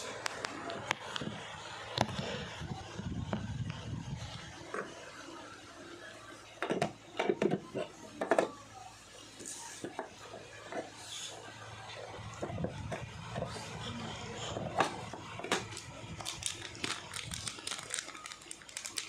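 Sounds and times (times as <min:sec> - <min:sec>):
packing materials rubbing and scraping: 0:15.6 - 0:19.0.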